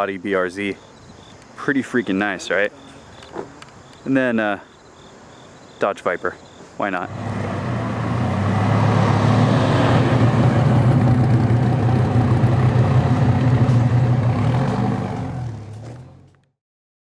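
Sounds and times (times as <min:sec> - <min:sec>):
car engine with deep exhaust: 0:07.1 - 0:16.4.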